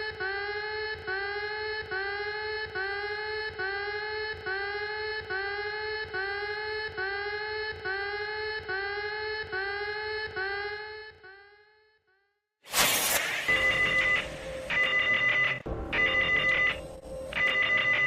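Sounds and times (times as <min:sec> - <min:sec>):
electronic alert alarm beeps: 0:13.4 - 0:18.0.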